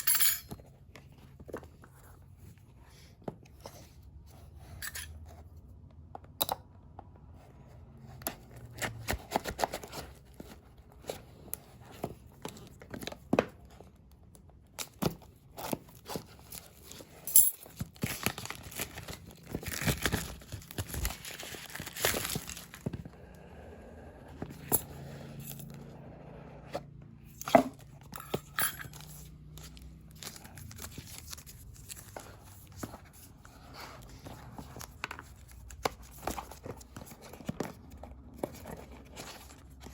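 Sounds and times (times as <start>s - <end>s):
plastic and paper tearing: 18.0s - 22.8s
box handling clicks and knocks: 26.7s - 28.4s.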